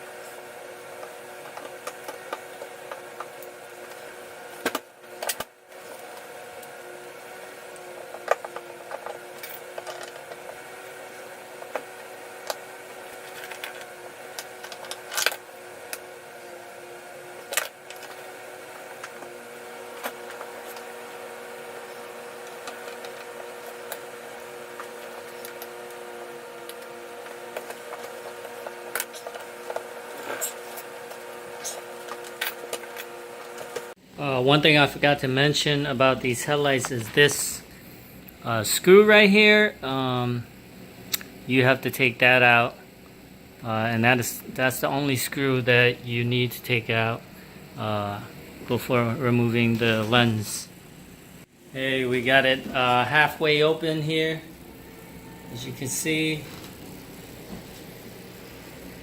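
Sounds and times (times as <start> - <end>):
steady hum: 0.0 - 59.0.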